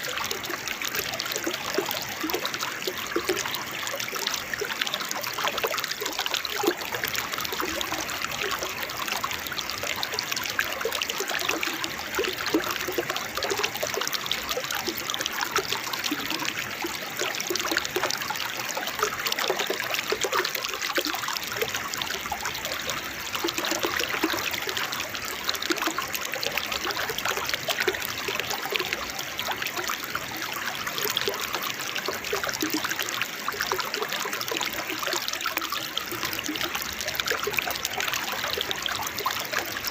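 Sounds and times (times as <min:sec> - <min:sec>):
waterfall trickling and splashing: 0:00.0 - 0:39.9.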